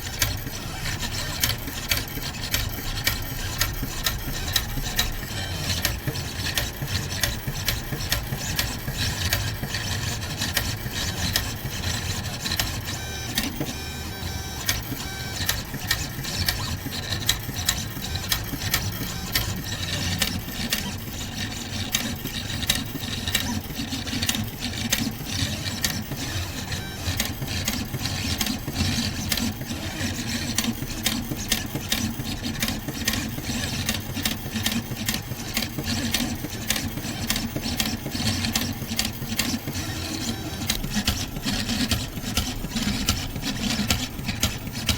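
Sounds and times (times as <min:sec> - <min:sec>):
stepper motors whirring: 0:00.0 - 0:44.9.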